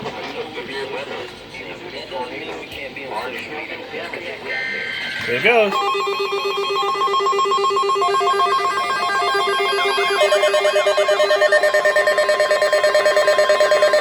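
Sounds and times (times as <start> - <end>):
weather radio alert alarm: 4.5 - 14.0
fast pulsing beep: 4.7 - 14.0.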